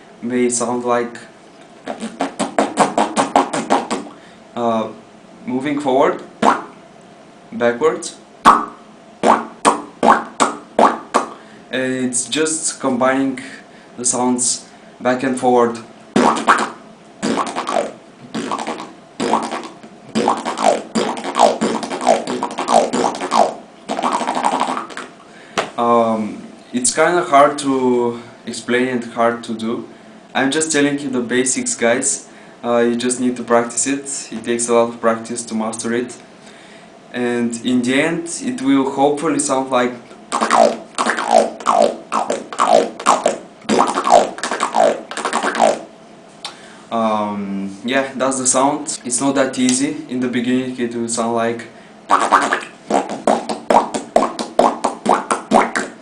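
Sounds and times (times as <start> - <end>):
beatbox lip roll: 1.6 - 4.2, 6.1 - 6.8, 8.4 - 11.5, 16.1 - 25.7, 40.2 - 46.6, 52.1 - 56.0.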